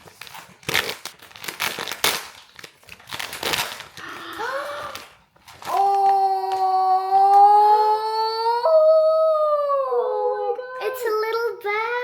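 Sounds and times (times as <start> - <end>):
plastic packaging crinkling and tearing: 0.0 - 6.8.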